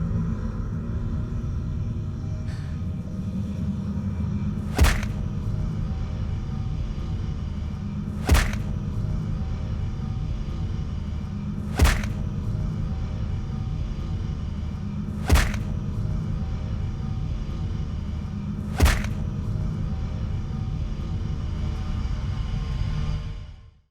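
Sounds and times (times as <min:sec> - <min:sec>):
low rumbling drone: 0:00.0 - 0:23.8
sharp crack: 0:04.6 - 0:05.5, 0:08.1 - 0:09.0, 0:11.7 - 0:12.5, 0:15.2 - 0:16.0, 0:18.7 - 0:19.4.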